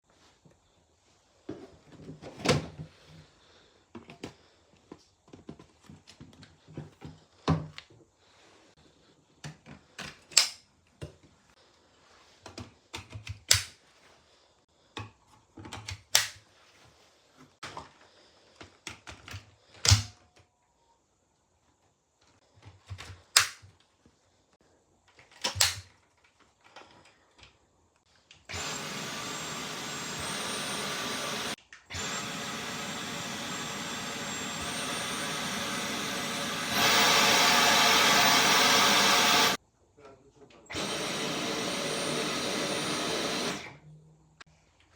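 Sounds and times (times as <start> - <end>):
cordless vacuum running: 28.5 - 39.6, 40.7 - 43.8.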